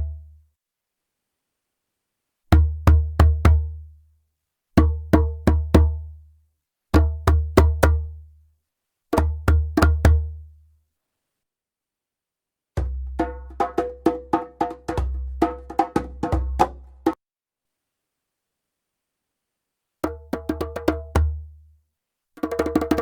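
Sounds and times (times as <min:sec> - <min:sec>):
djembe played by hand: 0:04.8 - 0:06.0, 0:07.0 - 0:08.0, 0:09.2 - 0:10.3, 0:12.8 - 0:17.2, 0:20.0 - 0:21.4, 0:22.4 - 0:23.0.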